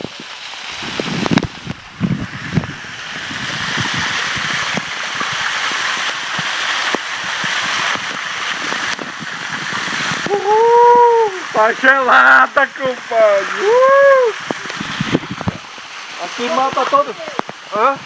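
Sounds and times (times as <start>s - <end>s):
waterfall rushing and splashing: 0.0s - 18.0s
person calling out: 10.3s - 11.5s, 13.4s - 14.4s.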